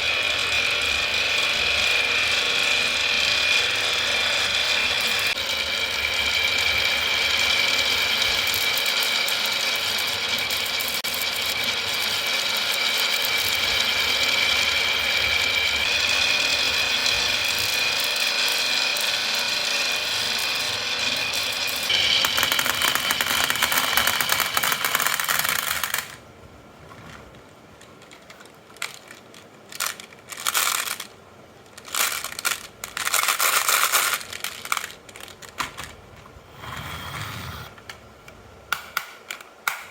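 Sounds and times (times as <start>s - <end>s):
marbles rattling on wooden track: 21.6s - 26.2s, 27.8s - 31.1s, 31.7s - 36.0s.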